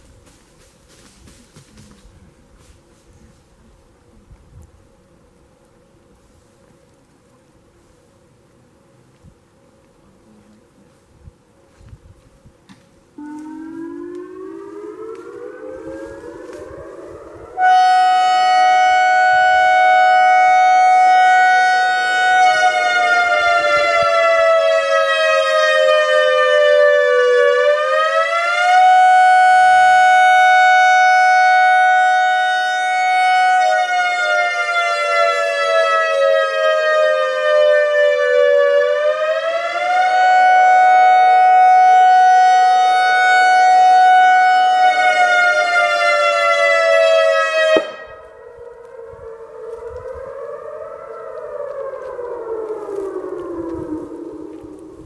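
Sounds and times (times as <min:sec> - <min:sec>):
loud buzzy warning siren: 0:13.1 - 0:55.0
faint rising siren tone: 0:13.2 - 0:55.0.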